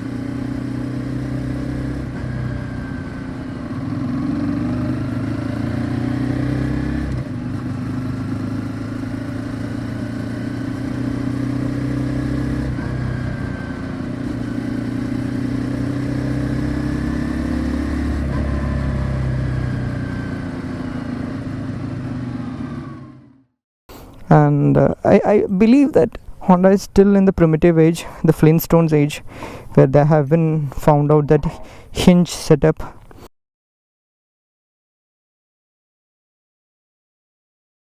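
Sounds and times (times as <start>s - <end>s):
motorcycle engine running: 0.0s - 23.5s.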